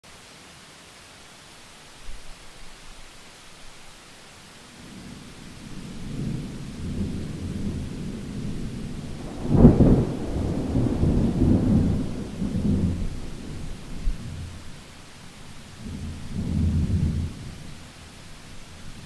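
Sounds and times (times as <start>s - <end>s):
rain hissing: 0.1s - 19.0s
thunder rumbling: 4.9s - 14.8s
sharp thunder crack: 5.7s - 14.4s.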